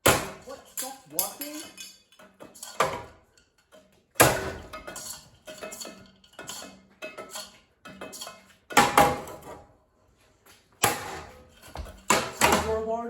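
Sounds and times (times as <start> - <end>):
plastic fan blades clattering: 0.4 - 9.5.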